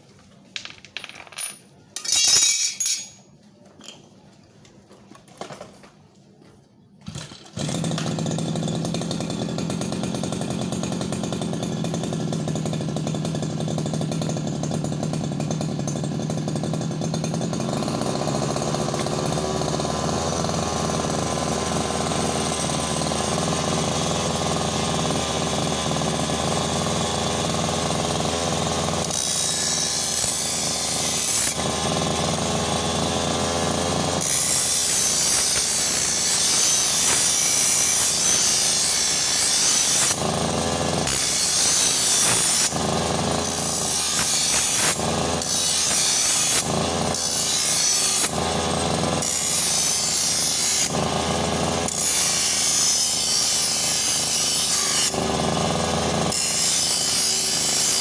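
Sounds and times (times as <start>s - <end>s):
brush cutter engine running: 7.1s - 45.7s, 46.5s - 47.5s, 48.2s - 49.6s, 50.8s - 52.0s, 55.1s - 56.4s.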